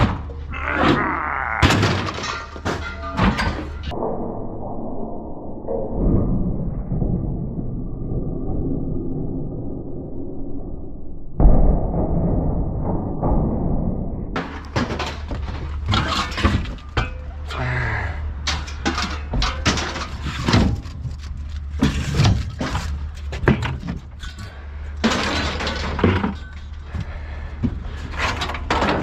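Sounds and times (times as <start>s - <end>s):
scrap metal clanking and crashing: 1.6s - 3.9s, 14.4s - 29.0s
low steady hum: 13.7s - 29.0s.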